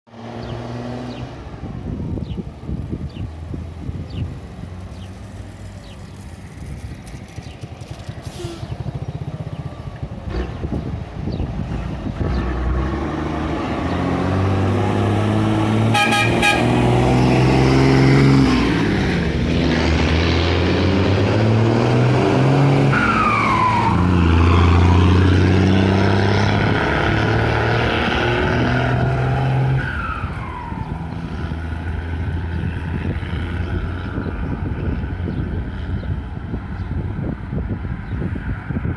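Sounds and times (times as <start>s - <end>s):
diesel truck engines rumbling: 0.1s - 38.9s
truck horn toot: 15.7s - 17.4s.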